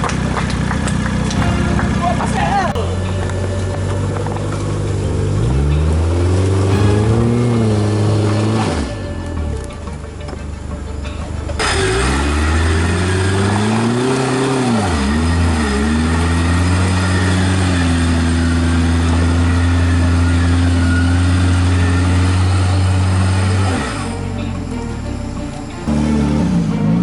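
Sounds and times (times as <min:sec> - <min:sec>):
engine revving hard: 0:11.6 - 0:24.0.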